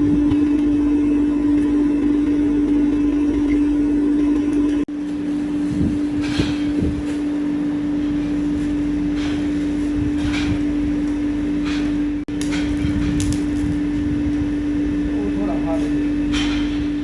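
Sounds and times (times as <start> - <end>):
machinery electric hum: 0.0 - 17.0.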